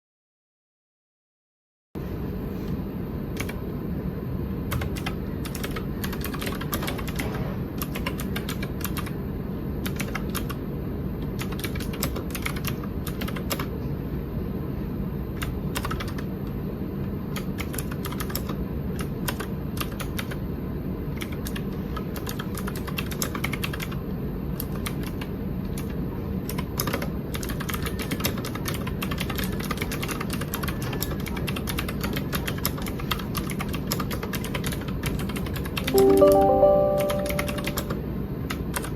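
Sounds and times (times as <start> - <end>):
mechanical keyboard typing clicks: 3.4 - 3.6, 4.7 - 7.2, 7.8 - 9.2, 9.8 - 10.6, 11.4 - 13.7, 17.3 - 20.4, 24.6 - 37.9.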